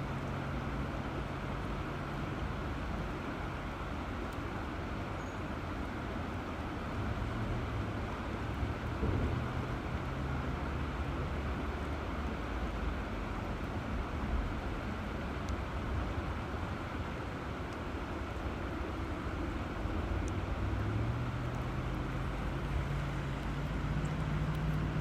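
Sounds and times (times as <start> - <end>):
river water running: 0.0 - 25.0.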